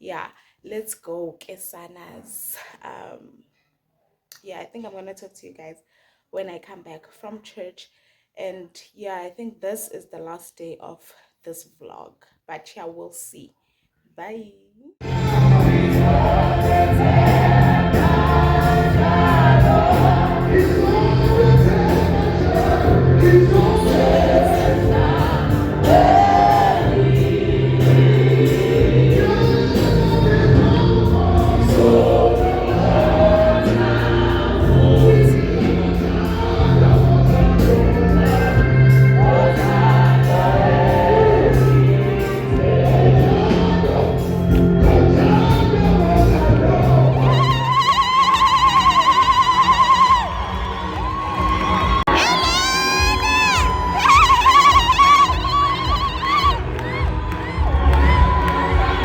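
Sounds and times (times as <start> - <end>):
held bass notes: 15.0 - 50.6
choir singing gospel: 15.0 - 59.0.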